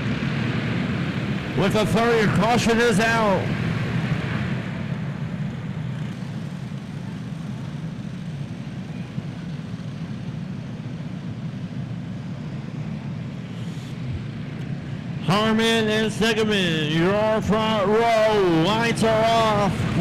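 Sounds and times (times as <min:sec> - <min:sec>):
kart engines droning: 0:00.0 - 0:20.0.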